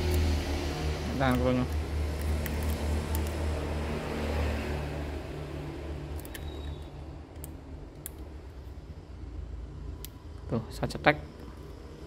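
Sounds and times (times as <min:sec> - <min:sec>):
light clicks of phone parts: 0:01.2 - 0:03.4, 0:06.1 - 0:08.4.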